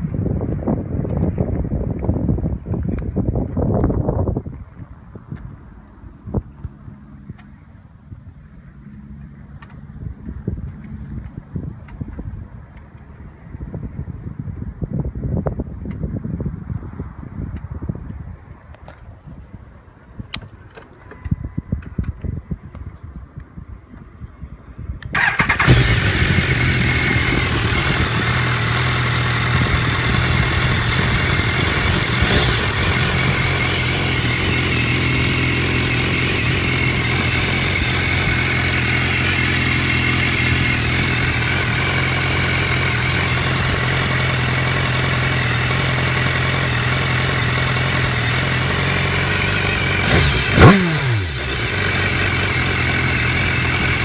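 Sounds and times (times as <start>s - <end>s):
motorcycle starter cranking: 25.1s - 29.2s
motorcycle engine idling: 25.1s - 54.0s.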